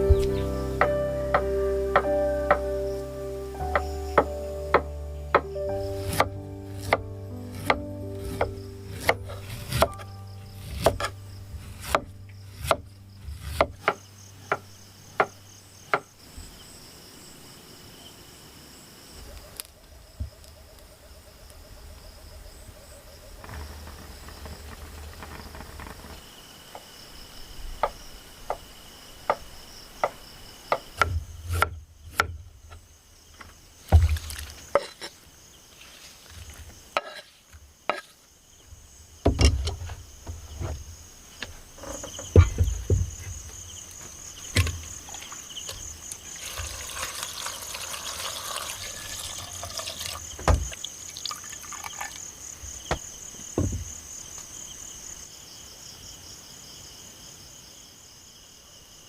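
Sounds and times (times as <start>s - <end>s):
low thumps: 0.0s - 3.0s, 38.7s - 46.0s, 52.8s - 54.1s
crickets chirring: 0.0s - 59.0s
sharp clicks and knocks: 39.2s - 45.8s.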